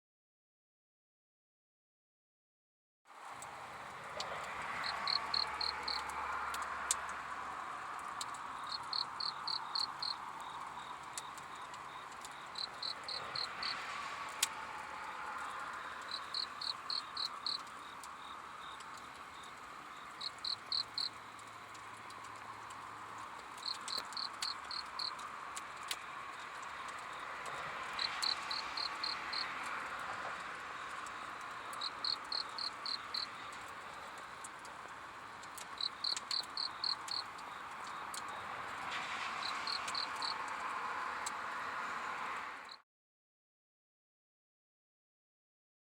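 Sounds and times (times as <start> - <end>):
sharp crackles: 3.2 - 41.4
background chorus of insects: 3.2 - 42.8
cricket chirping pulses: 4.6 - 6.1, 8.2 - 13.9, 15.4 - 22.8, 23.4 - 25.2, 25.8 - 29.6, 30.8 - 34.4, 35.4 - 38.8, 39.4 - 40.5.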